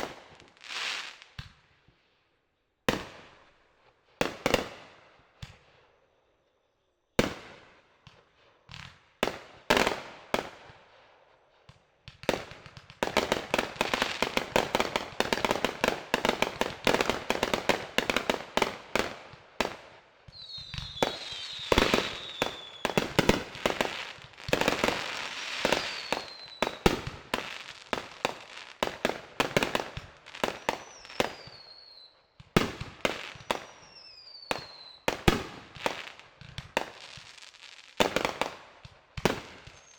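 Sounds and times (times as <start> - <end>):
firework bangs: 12.3 - 31.7
firework crackle: 12.3 - 39.9
falling firework whistles: 20.3 - 26.8, 30.6 - 32.2, 33.2 - 35.1, 39.6 - 39.9.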